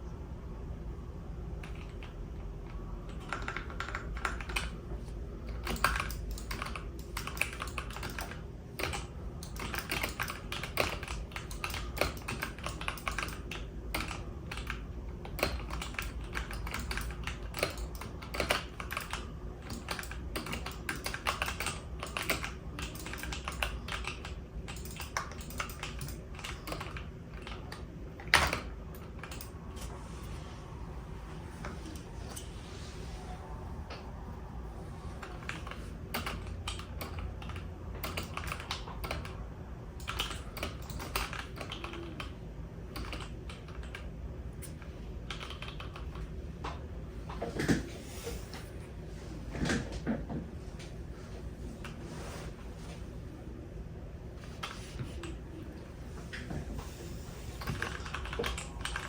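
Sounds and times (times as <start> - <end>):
steady low hum: 0.0 - 59.0
keyboard keys clicking: 1.6 - 4.8, 5.4 - 29.9, 35.2 - 39.4, 40.0 - 46.3, 57.6 - 59.0.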